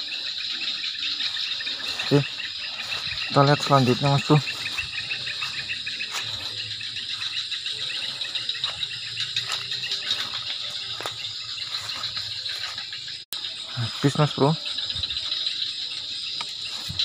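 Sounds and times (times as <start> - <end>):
insects trilling: 0.0 - 17.0.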